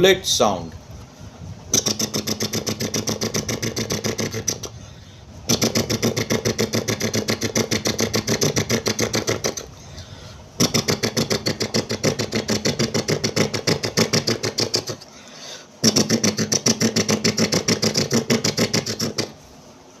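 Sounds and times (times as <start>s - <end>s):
person imitating gunfire with mouth: 1.7s - 4.8s, 5.4s - 9.8s, 10.6s - 15.1s, 15.8s - 19.4s.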